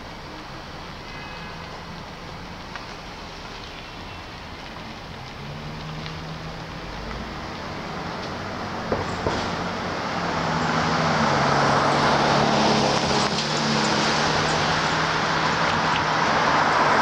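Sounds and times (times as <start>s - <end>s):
street traffic noise: 0.0s - 17.0s
vehicle engine hum: 0.0s - 17.0s.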